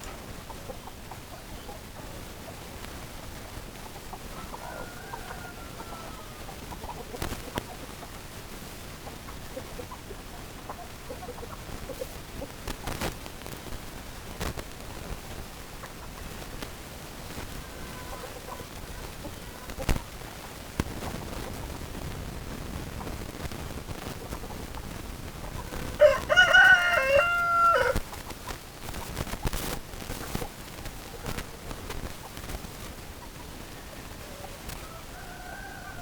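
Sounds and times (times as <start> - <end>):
background hiss: 0.0 - 36.0
chickens clucking: 0.0 - 36.0.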